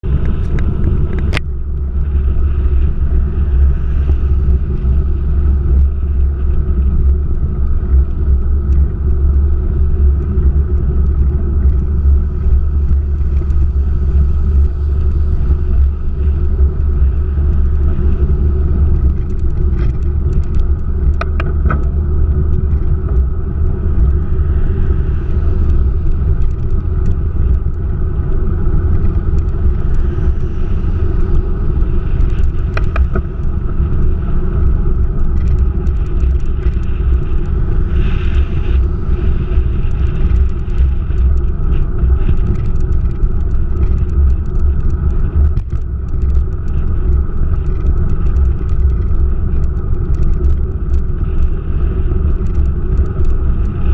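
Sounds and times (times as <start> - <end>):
car engine and road noise: 0.0 - 53.9
faint clicks: 39.5 - 51.5.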